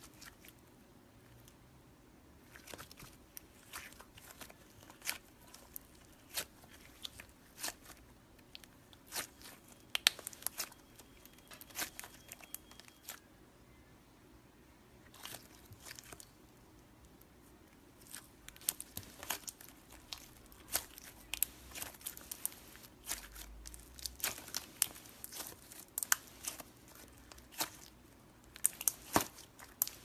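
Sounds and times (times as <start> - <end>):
slime crackling and popping: 2.5 - 13.2, 18.0 - 30.0.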